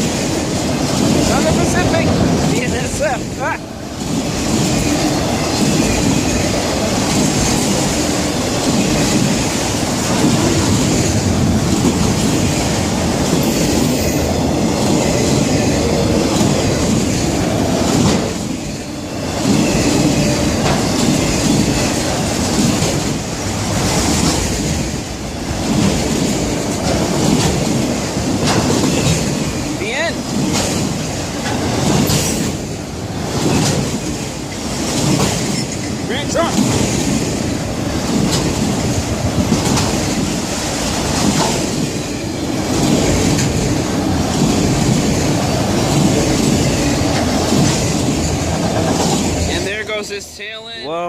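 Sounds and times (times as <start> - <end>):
freight train wheels rumbling on rails: 0.0 - 50.9.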